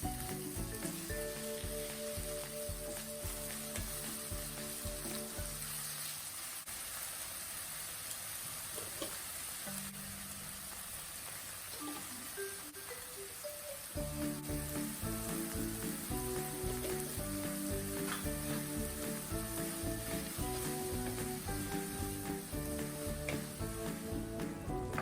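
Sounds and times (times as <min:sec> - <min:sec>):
soft background music: 0:00.0 - 0:06.1, 0:11.8 - 0:25.0
food sizzling in frying pan: 0:00.0 - 0:25.0.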